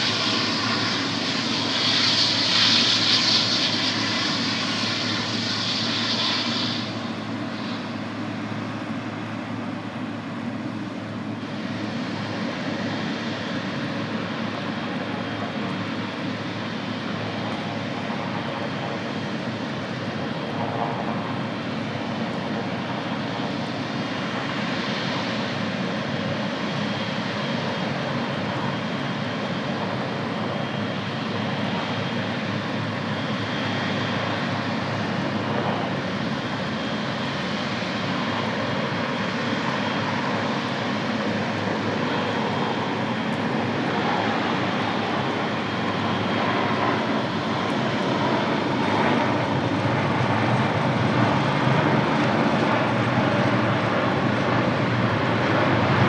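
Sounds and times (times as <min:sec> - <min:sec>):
airliner engines running: 0:00.0 - 0:56.0.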